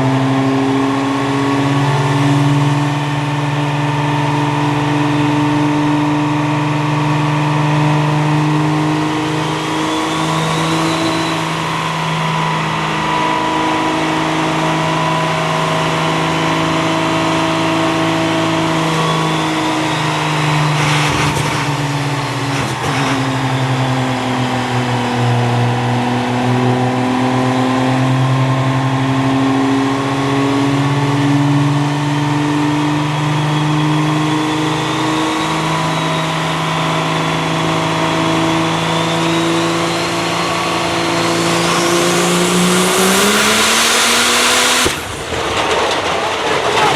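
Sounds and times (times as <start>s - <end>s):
faint whine rising and falling: 32.9s - 45.4s.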